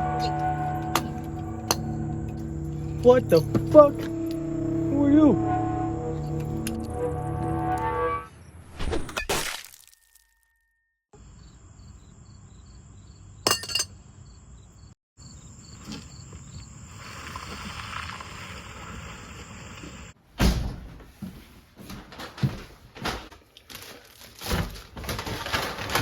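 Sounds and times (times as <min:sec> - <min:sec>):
crickets chirping: 0:11.2 - 0:20.2
steady hiss: 0:16.9 - 0:20.2.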